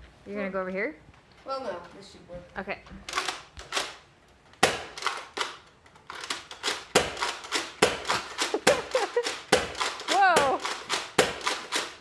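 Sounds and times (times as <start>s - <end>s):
toy blaster firing crack: 4.6s - 5.6s, 6.2s - 12.0s
balls bouncing off hard surfaces: 6.9s - 11.8s.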